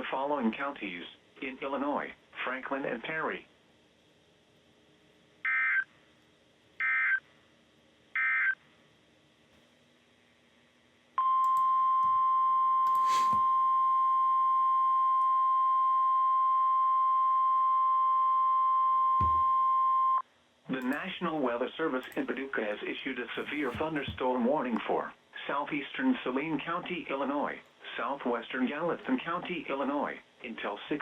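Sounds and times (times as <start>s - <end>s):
steady loud alarm tone: 17.8s - 20.2s.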